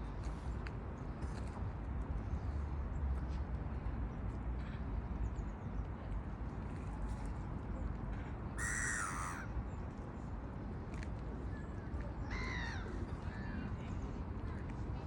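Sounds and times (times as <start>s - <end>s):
seagull harsh call: 8.6s - 9.4s
faint bird calls: 8.6s - 9.5s.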